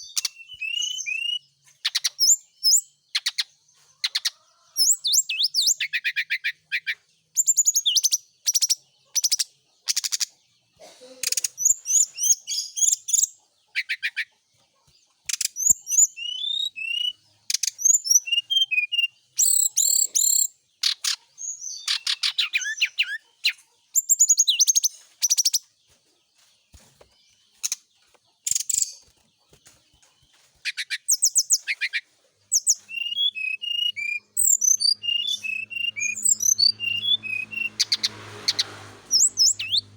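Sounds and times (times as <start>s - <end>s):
bird singing high trills: 0.0s - 3.4s, 15.6s - 25.7s, 32.6s - 39.9s.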